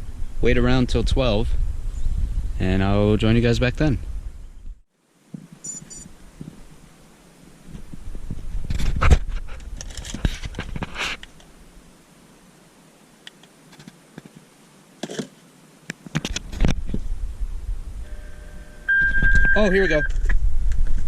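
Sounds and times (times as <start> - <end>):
microphone handling noise: 7.6 - 11.4, 16.0 - 21.0.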